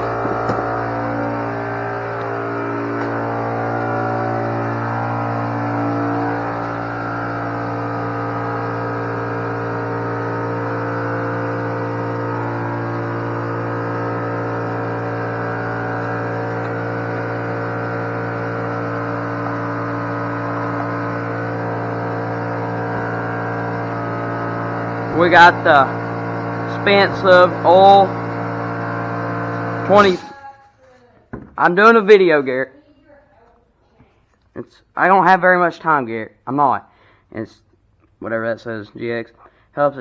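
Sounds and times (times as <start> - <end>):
motor humming: 0.0 - 30.5.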